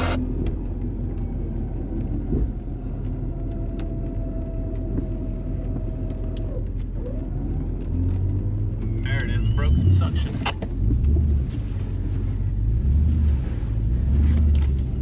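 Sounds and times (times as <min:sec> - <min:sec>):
steady whine: 0:00.0 - 0:00.8, 0:09.0 - 0:10.7
truck engine rumbling under load: 0:00.0 - 0:15.0.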